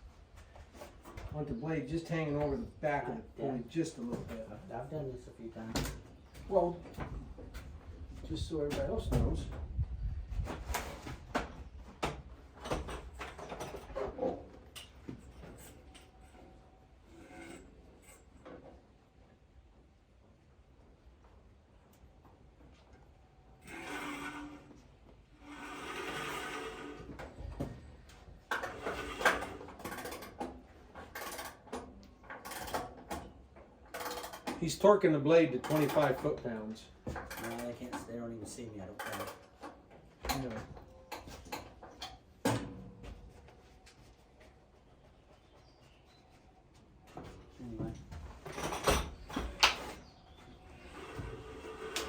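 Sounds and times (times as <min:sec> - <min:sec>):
metallic clatter: 0:37.2 - 0:38.2
metallic clicks and knocks: 0:39.0 - 0:42.8.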